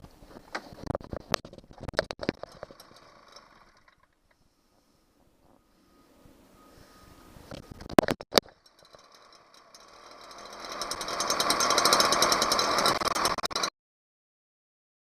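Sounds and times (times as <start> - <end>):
leaf blower engine running: 2.4 - 3.9, 8.5 - 13.7.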